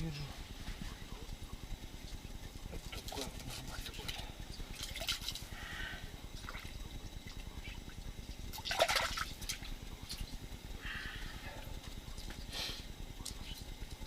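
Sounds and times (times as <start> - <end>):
water sloshing in a hole: 2.7 - 5.6, 6.4 - 10.4
water splash: 8.6 - 9.6.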